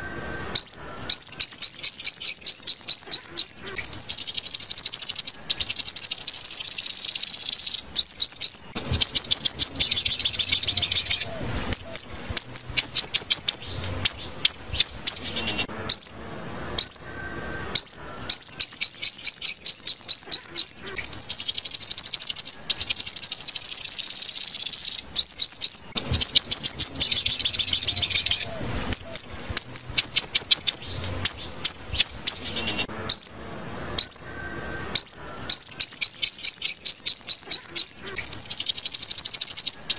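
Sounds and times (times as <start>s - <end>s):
bird trilling and chirping: 0.0s - 39.9s.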